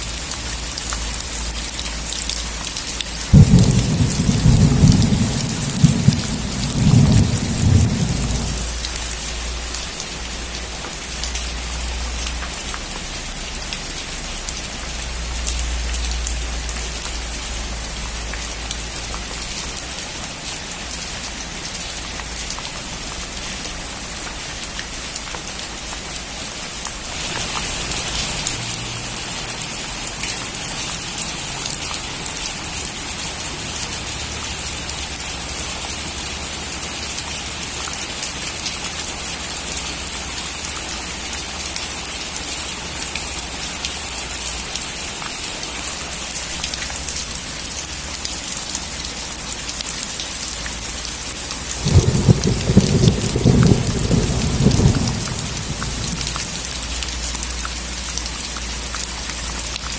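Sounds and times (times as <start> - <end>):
heavy rain on a metal roof: 0.0 - 59.9
thunder rumble: 3.3 - 9.0, 51.8 - 56.8.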